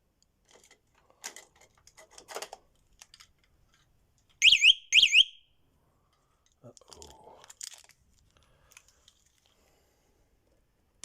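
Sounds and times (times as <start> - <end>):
light clicks and handling noises: 0.1 - 4.4, 6.0 - 9.8
scooter alarm warbling chirps: 4.4 - 5.4.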